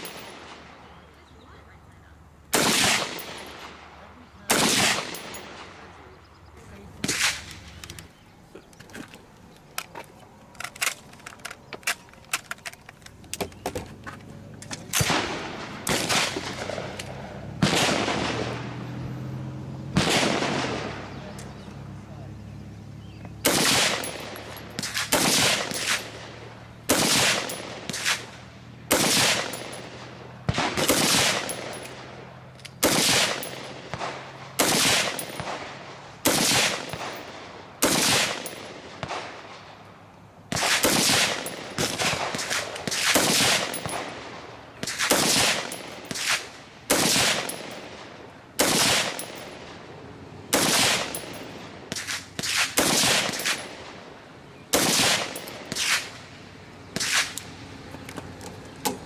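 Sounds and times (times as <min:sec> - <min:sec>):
gunshots with echo: 0:02.5 - 0:06.0, 0:14.9 - 0:18.8, 0:19.9 - 0:21.3, 0:23.4 - 0:32.2, 0:32.8 - 0:39.7, 0:40.5 - 0:49.9, 0:50.5 - 0:54.0, 0:54.7 - 0:56.2.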